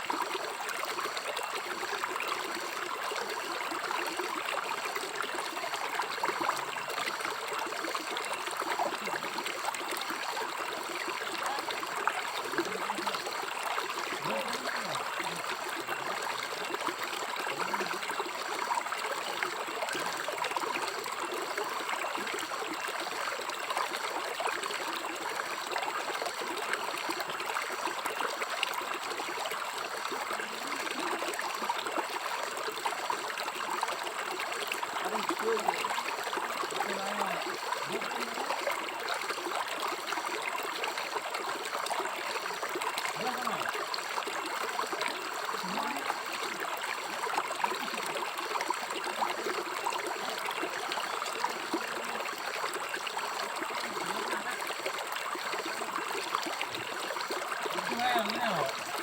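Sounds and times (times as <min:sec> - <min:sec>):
faint low gurgles: 0:00.0 - 0:59.0
river water babbling: 0:00.0 - 0:59.0.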